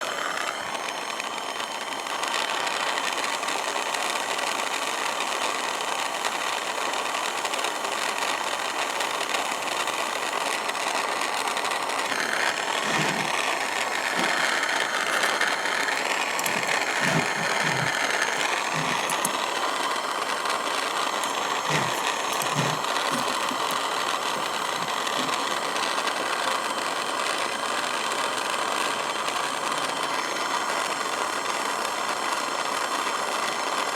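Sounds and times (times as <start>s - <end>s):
gas torch flame hissing: 0.0s - 4.3s, 11.5s - 32.2s.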